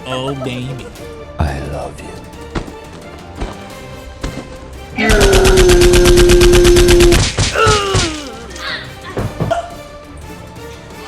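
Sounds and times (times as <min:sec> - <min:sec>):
background music: 0:00.0 - 0:11.0
quick whacks: 0:05.1 - 0:08.3.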